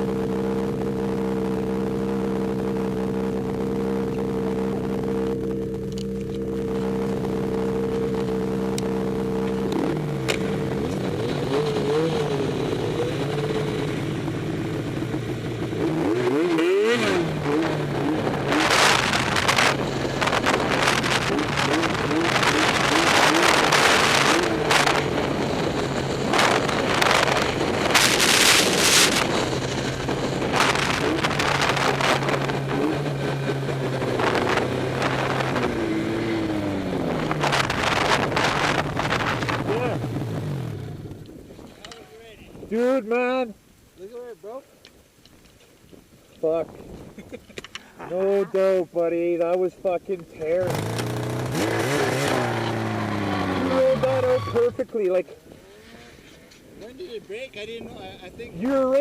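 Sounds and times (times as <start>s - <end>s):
snowmobile engine revving: 0.0s - 41.2s, 50.4s - 59.0s
loud rushing noise: 16.6s - 41.0s.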